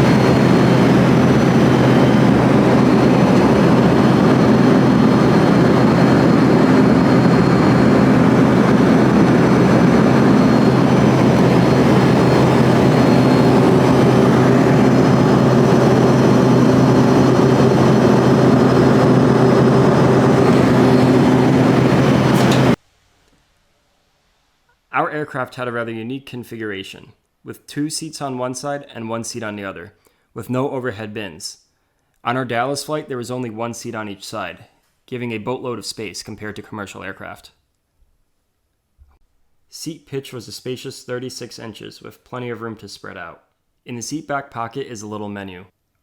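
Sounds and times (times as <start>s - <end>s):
jet engines droning: 0.0s - 22.8s.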